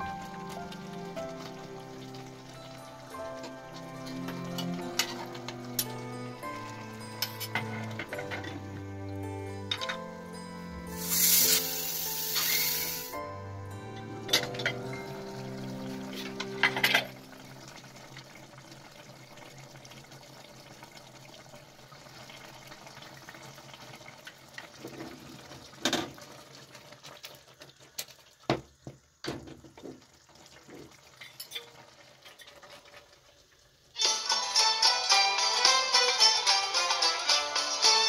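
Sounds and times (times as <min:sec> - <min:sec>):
background music: 0:00.0 - 0:18.6, 0:34.0 - 0:38.0
utensils and dishes clicking: 0:07.1 - 0:08.6, 0:11.0 - 0:13.2.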